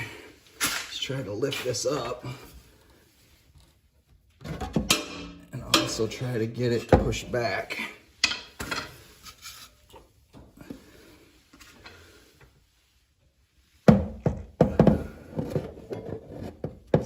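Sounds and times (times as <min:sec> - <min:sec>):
man's voice: 0:05.6 - 0:08.0.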